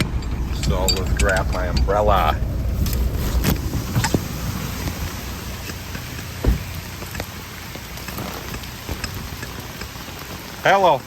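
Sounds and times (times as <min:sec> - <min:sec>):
heavy rain falling: 0:00.0 - 0:11.0
sharp knocks: 0:05.7 - 0:07.3
dull thump: 0:06.3 - 0:07.3.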